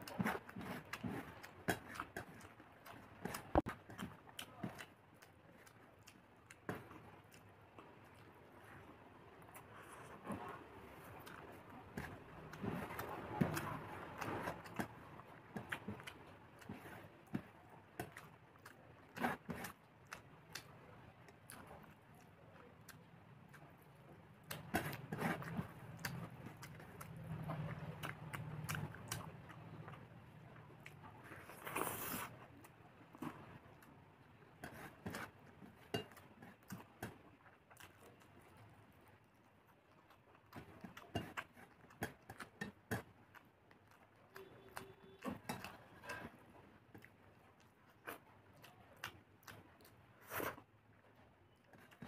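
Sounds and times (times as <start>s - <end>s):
chewing crunches: 21.3s - 50.7s.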